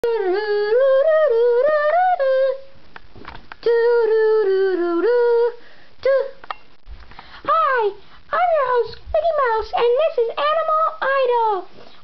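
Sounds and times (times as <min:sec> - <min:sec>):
person humming a tune: 0:00.0 - 0:02.7.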